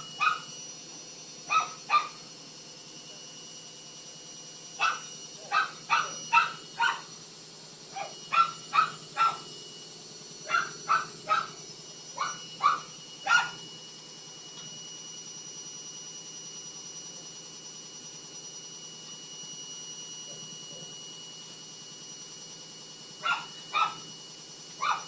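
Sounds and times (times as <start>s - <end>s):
dog barking: 0.0s - 0.5s, 1.5s - 2.2s, 4.8s - 7.1s, 7.9s - 9.5s, 10.5s - 11.6s, 12.2s - 13.6s, 23.2s - 24.1s, 24.8s - 25.0s
steady low hum: 0.0s - 15.6s.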